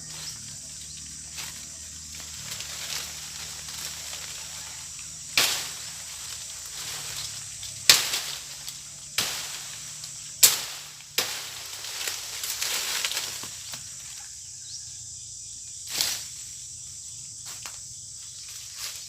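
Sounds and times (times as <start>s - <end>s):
insects buzzing: 0.0s - 19.0s.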